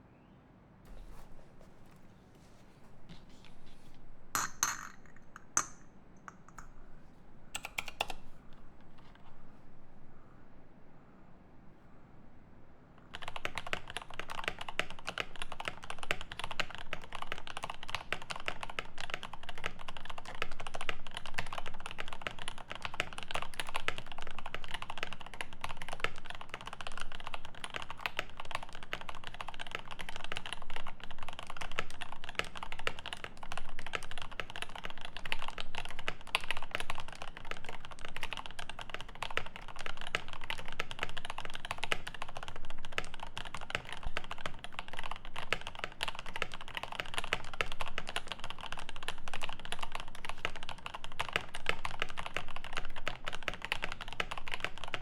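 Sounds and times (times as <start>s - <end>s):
mechanical keyboard typing: 7.6s - 8.3s, 13.1s - 55.0s.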